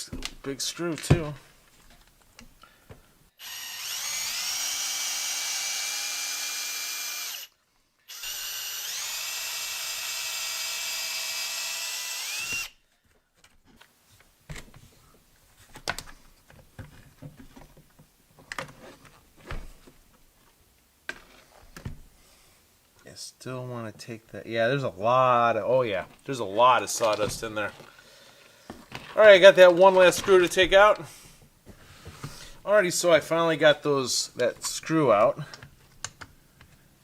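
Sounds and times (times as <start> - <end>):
cordless drill whining: 3.4 - 12.8.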